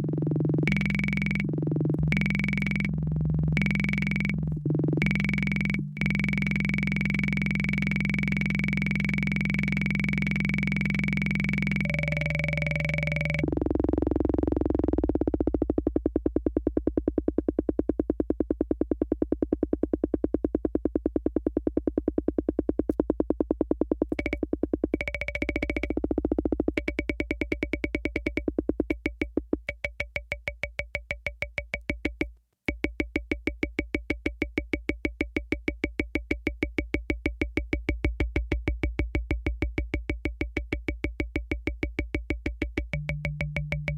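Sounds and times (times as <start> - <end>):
drum machine electronic beats: 0.6 - 3.0, 3.6 - 43.9
electronic tones: 0.6 - 13.6, 24.2 - 31.8.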